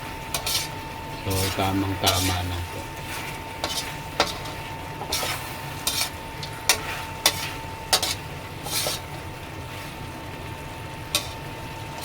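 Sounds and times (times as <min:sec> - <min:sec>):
food sizzling: 0:00.0 - 0:12.0
utensil scraping a pan: 0:00.3 - 0:09.2, 0:11.1 - 0:11.5.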